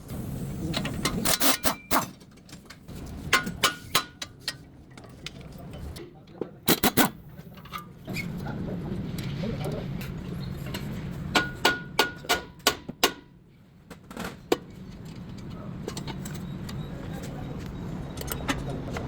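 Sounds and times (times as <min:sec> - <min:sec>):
sharp metallic knocks: 0:11.3 - 0:13.3.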